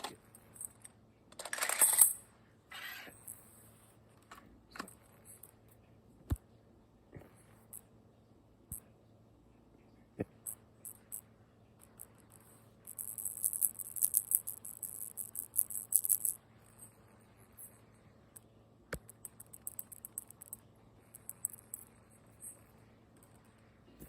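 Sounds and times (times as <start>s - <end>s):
high-pitched clicking and rattling: 0.0s - 3.4s, 10.4s - 16.4s, 19.0s - 23.7s
faint steady hum: 0.0s - 24.0s.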